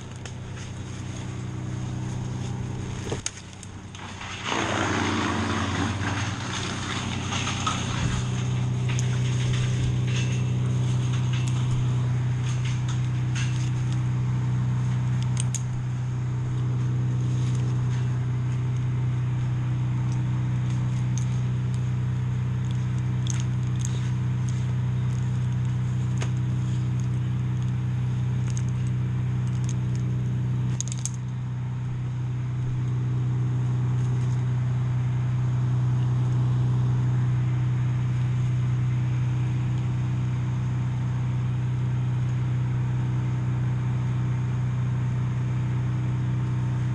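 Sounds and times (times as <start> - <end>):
engine droning: 0.0 - 46.9
small clicks and rattles: 6.2 - 14.0, 22.6 - 27.8, 28.4 - 30.1, 30.7 - 31.4.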